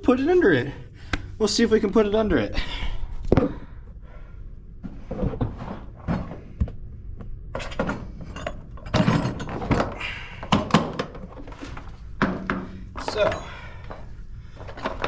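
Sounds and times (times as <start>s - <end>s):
tools clinking and clicking: 13.0s - 15.0s.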